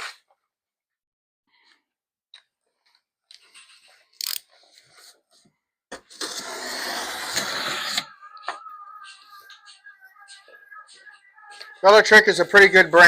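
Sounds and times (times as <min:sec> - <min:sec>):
loud rasping noise: 0:06.2 - 0:12.0.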